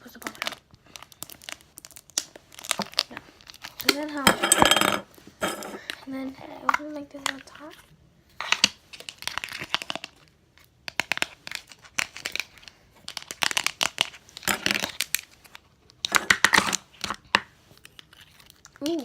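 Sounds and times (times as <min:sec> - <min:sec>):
plastic packaging crinkling and tearing: 0:00.0 - 0:04.2, 0:08.4 - 0:19.0.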